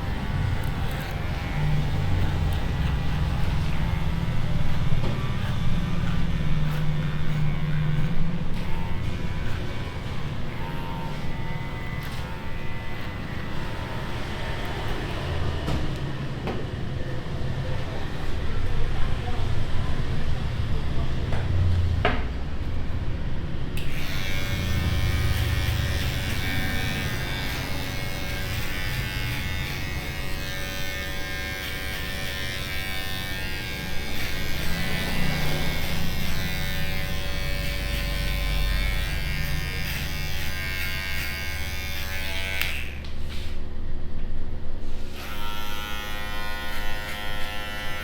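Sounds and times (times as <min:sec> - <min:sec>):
electric hair clippers buzzing: 0:00.0 - 0:15.1, 0:23.8 - 0:43.6, 0:45.0 - 0:48.0.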